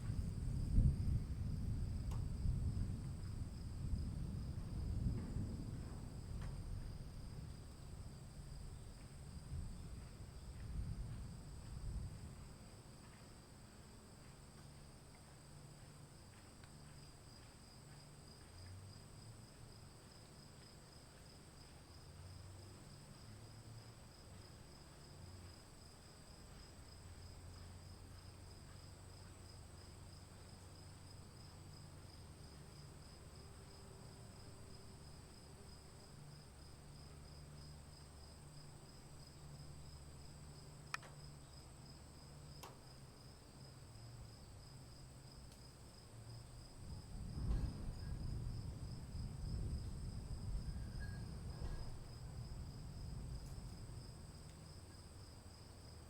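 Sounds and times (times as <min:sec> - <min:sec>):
low rumble: 0:00.0 - 0:12.5, 0:46.8 - 0:54.5.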